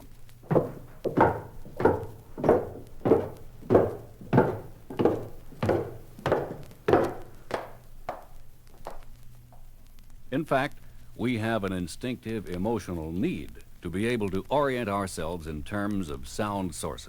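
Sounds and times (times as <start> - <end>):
footsteps with sharp thuds: 0.0 - 9.7.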